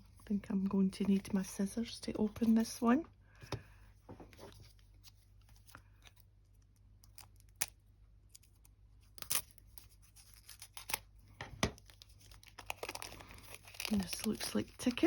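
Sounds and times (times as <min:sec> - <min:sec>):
packaging rustling: 0:11.7 - 0:15.0.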